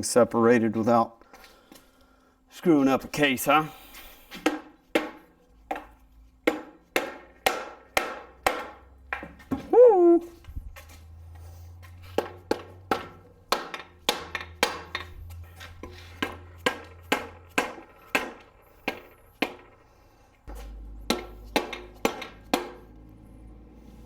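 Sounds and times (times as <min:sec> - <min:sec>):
hammer striking metal engine case: 0:04.3 - 0:09.7, 0:11.9 - 0:23.6.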